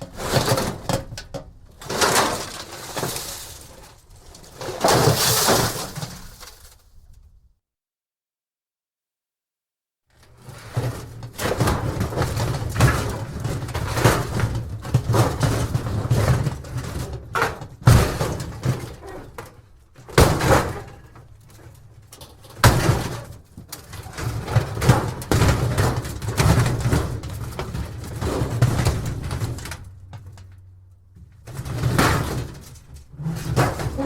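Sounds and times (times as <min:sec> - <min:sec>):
metal scraps rattling: 0:00.1 - 0:07.1, 0:20.4 - 0:34.0
metal scraps crashing: 0:01.8 - 0:07.1, 0:22.2 - 0:30.3, 0:31.4 - 0:34.0.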